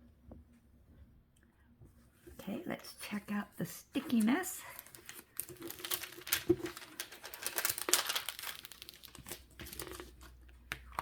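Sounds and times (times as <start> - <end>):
plastic film peeling from adhesive: 4.8 - 10.2.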